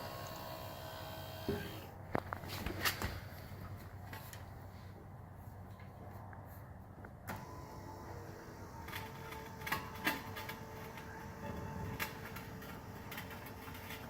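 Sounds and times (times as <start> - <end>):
electric motor whining: 0.0 - 1.9.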